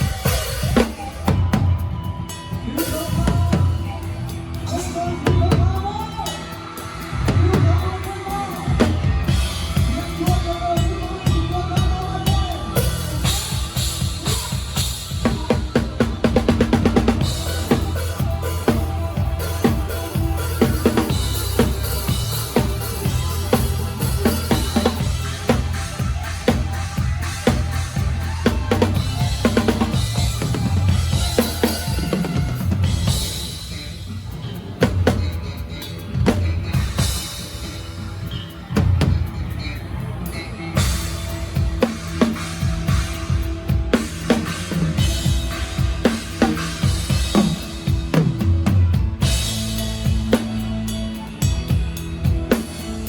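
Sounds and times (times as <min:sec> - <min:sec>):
drum kit beat: 0:00.0 - 0:53.0
live band music: 0:00.0 - 0:53.0
fast drum fill: 0:05.2 - 0:37.9.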